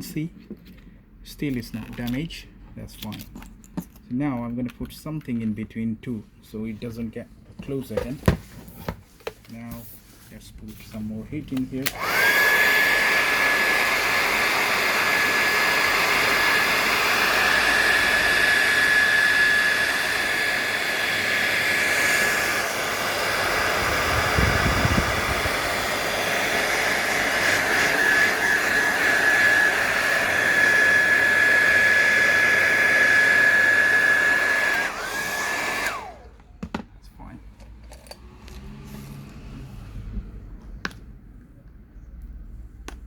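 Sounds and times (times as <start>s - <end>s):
hair dryer running: 11.5s - 36.4s.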